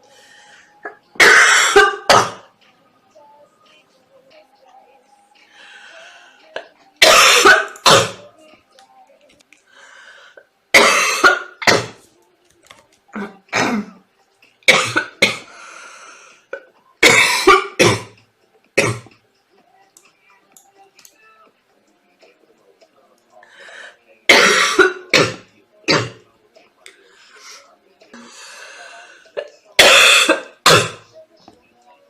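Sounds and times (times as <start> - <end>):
girl coughing: 1.2 - 2.5, 7.0 - 8.3, 10.8 - 12.0, 13.2 - 14.0, 14.7 - 15.5, 17.0 - 18.2, 24.3 - 26.2, 29.8 - 31.1.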